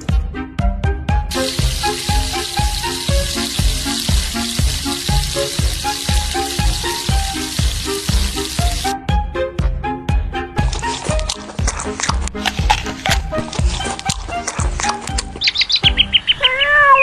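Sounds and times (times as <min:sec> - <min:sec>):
background music with beat: 0:00.0 - 0:16.0
fish sizzling in hot oil: 0:01.3 - 0:08.9.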